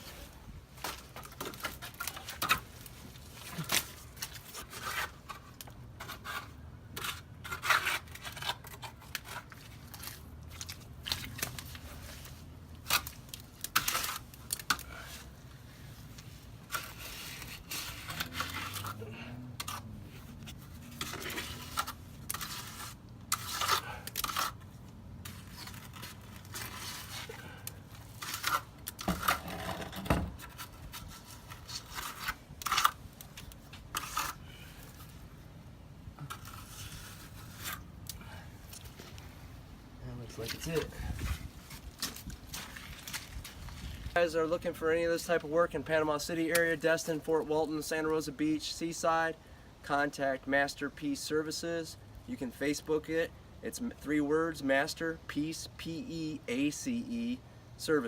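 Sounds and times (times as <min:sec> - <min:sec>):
tool scraping wet concrete: 0:03.4 - 0:15.3, 0:16.6 - 0:33.0, 0:33.7 - 0:35.2, 0:36.2 - 0:38.3.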